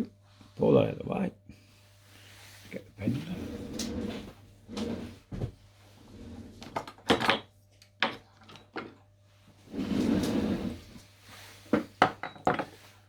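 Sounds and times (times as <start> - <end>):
rubbing scrape: 2.2 - 5.3, 9.7 - 11.7.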